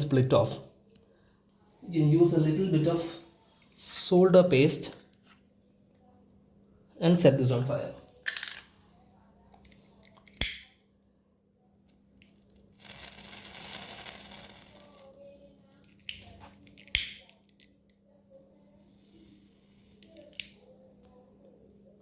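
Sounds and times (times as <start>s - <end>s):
lighter clicking: 10.3s - 10.7s, 12.8s - 15.0s, 16.1s - 17.4s, 20.0s - 20.7s
lighter flame hissing: 12.2s - 15.3s, 18.7s - 20.8s.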